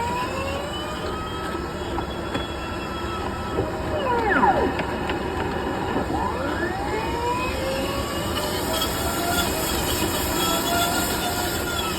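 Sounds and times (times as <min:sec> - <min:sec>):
sliding squeals: 0:08.4 - 0:11.9.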